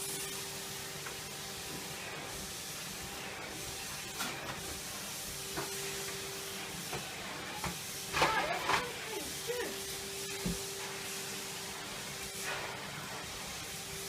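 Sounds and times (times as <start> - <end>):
vacuum cleaner running: 0.0 - 14.0
vacuum knocking on carpet: 10.4 - 10.7.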